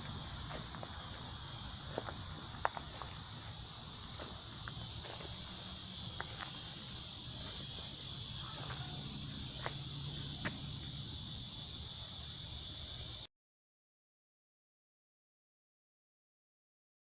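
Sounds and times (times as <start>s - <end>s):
night insects chirping: 0.0s - 13.3s.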